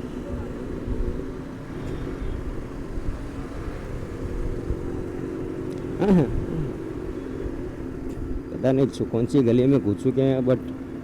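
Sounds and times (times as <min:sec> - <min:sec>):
motorcycle engine running: 0:00.0 - 0:11.0
road and wind rumble: 0:00.0 - 0:11.0.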